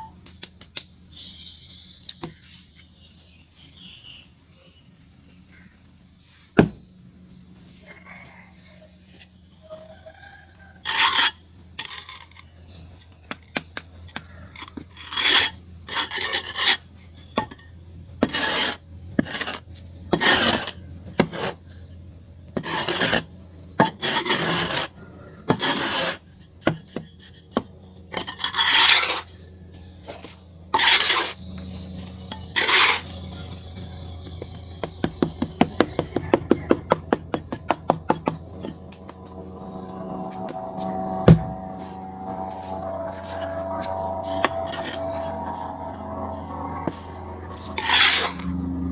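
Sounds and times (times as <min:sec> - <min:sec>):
charcoal rasping strokes: 0:14.1 - 0:16.8, 0:18.2 - 0:21.6, 0:22.6 - 0:29.3, 0:30.0 - 0:31.4, 0:32.3 - 0:33.6, 0:47.7 - 0:48.5.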